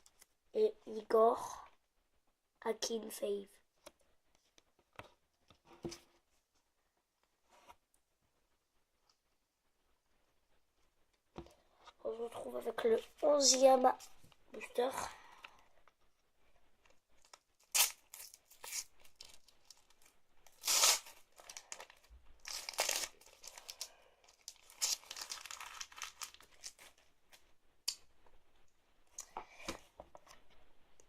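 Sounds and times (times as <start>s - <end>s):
foil pack tearing and crinkling: 20.5s - 26.9s.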